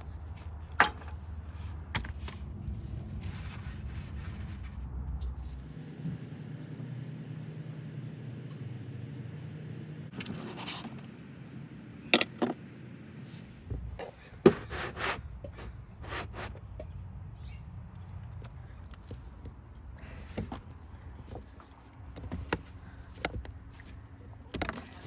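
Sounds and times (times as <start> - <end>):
deep rumble: 0.0 - 10.1
low steady hum: 0.0 - 16.0.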